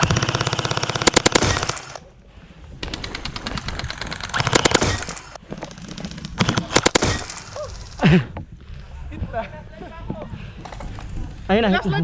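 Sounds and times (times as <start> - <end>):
gel blasters firing bursts: 3.0 - 5.3.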